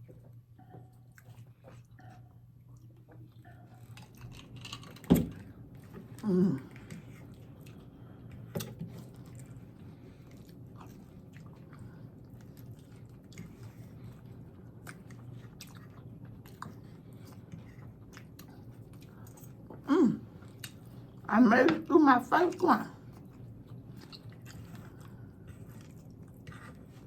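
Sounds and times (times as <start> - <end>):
crunchy chewing: 0.8 - 21.2, 23.1 - 27.0.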